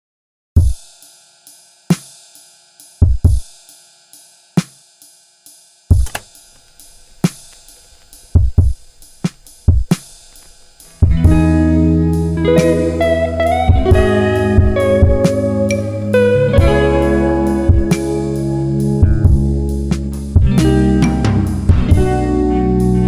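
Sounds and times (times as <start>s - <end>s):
drum kit beat: 0.6s - 22.2s
hi-hat ticks: 0.7s - 13.1s
faint held chord: 6.1s - 19.0s.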